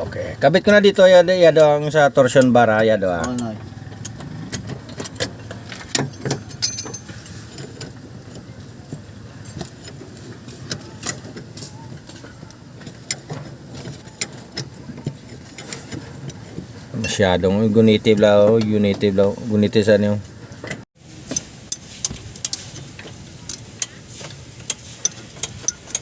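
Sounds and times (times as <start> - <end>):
metallic clicks of hand tools: 1.6 - 8.0, 21.3 - 26.0.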